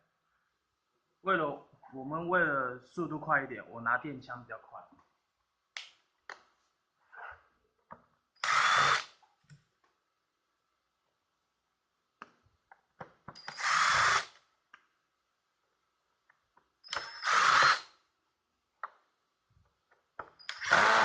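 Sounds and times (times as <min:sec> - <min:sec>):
electric screwdriver spinning: 0:08.4 - 0:09.2, 0:13.4 - 0:14.4, 0:16.9 - 0:17.9, 0:20.5 - 0:21.0.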